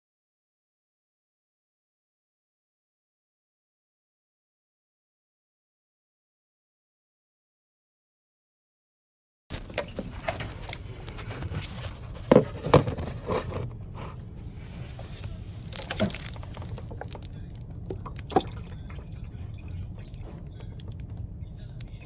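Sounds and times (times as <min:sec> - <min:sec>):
steady low hum: 0:09.6 - 0:22.0
water dripping and splashing: 0:15.6 - 0:22.0.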